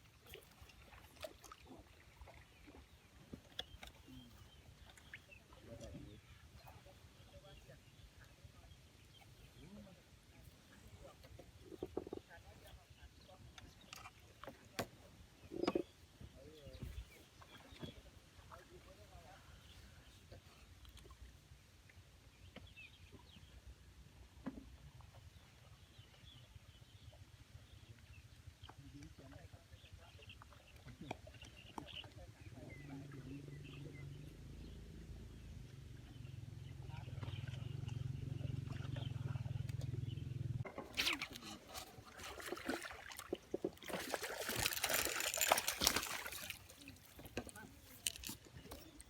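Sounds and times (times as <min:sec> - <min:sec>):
water splashing and sloshing: 0:00.0 - 0:07.3, 0:35.7 - 0:40.0, 0:40.6 - 0:49.0
faint bird chirps: 0:02.4 - 0:10.0.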